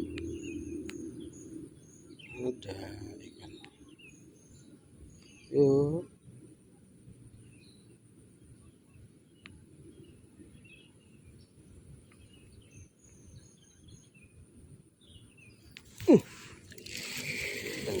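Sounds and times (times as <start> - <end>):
faint bird chirps: 0.0 - 6.1
low outdoor background: 0.0 - 18.0
faint click: 9.4 - 9.6.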